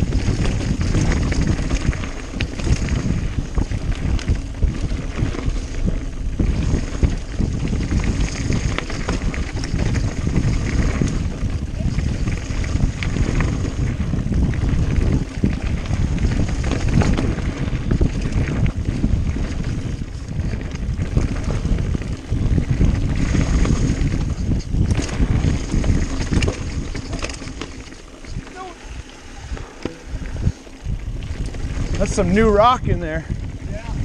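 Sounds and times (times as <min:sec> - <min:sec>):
bike rattling over rocks: 0:00.0 - 0:34.0
bike tyres rumbling: 0:00.0 - 0:34.0
wind buffeting microphone: 0:00.0 - 0:34.0.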